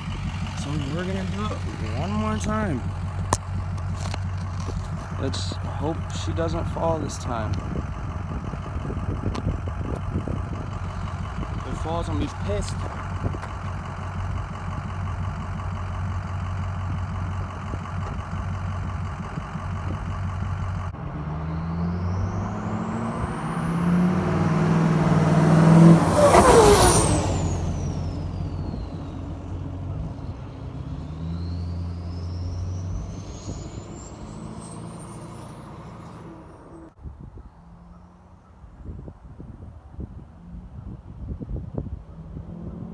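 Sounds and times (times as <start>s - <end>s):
diesel truck engine: 0.0s - 42.9s
high turbo whistle: 21.0s - 30.4s, 31.0s - 37.0s.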